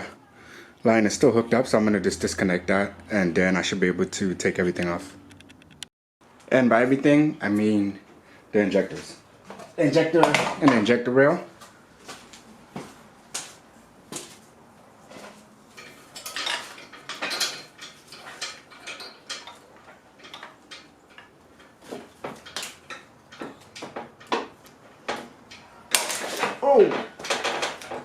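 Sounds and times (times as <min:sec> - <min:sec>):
metal tools clinking: 0:15.1 - 0:28.0.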